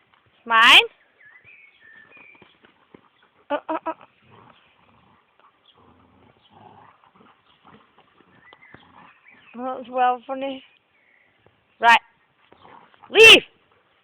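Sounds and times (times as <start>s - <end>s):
dogs growling faintly: 2.7s - 9.6s, 12.4s - 14.0s.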